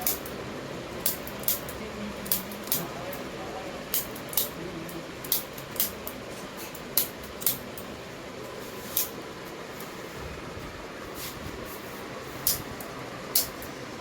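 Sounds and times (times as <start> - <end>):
sharp high-pitched clicks: 0.0 - 0.4, 1.0 - 3.3, 3.9 - 7.9, 12.4 - 13.8
steady low hiss: 0.0 - 14.0.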